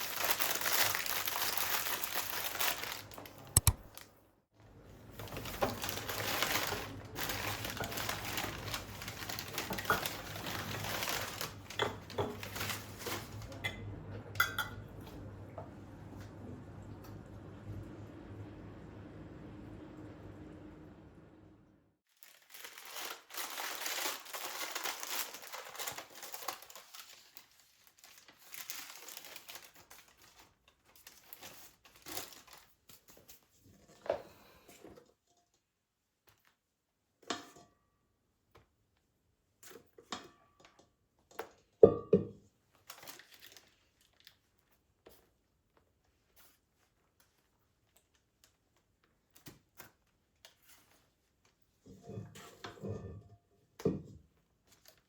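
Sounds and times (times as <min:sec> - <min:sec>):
crinkly material rustling: 0:00.0 - 0:13.6, 0:22.0 - 0:34.1, 0:42.6 - 0:52.3, 0:54.3 - 0:55.0.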